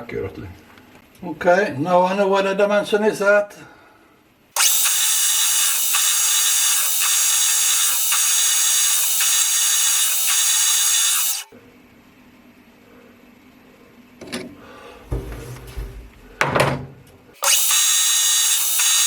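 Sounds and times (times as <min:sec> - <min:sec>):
metal lathe cutting: 0:04.6 - 0:11.5, 0:17.4 - 0:19.0.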